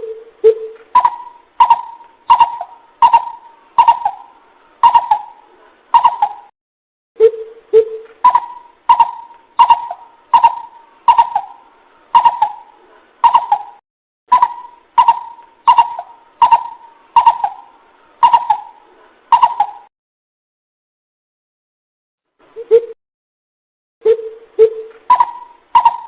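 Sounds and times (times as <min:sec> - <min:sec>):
bird hooting: 0:00.0 - 0:06.5, 0:07.2 - 0:19.9, 0:24.0 - 0:26.0.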